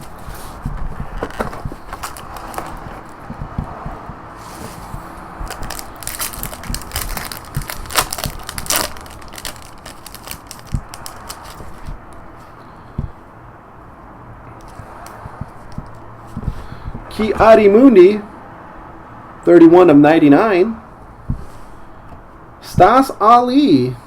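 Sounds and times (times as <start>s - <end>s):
packaging crinkling and tearing: 1.1s - 3.2s, 5.4s - 12.0s.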